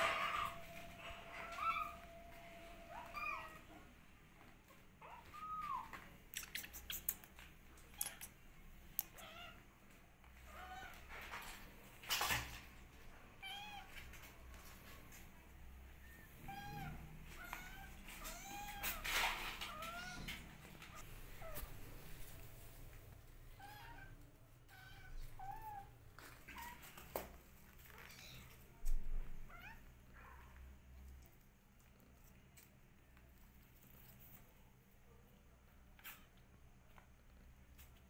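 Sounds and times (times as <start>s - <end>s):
kittens mewing: 0.0s - 3.7s.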